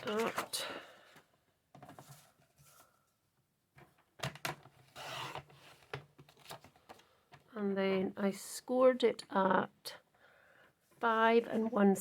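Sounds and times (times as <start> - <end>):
card rustling: 0.0 - 0.6.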